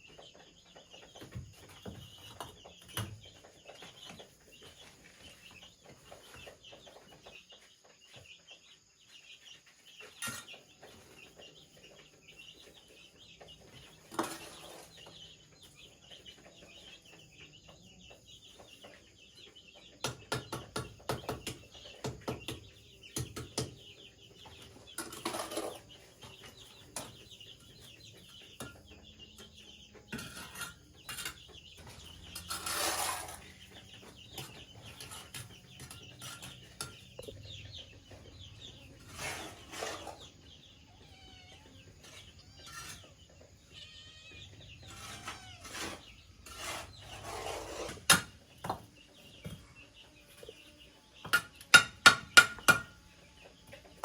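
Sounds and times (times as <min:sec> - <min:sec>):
chickens clucking: 0:00.0 - 0:54.0
small birds chirping: 0:00.0 - 0:54.0.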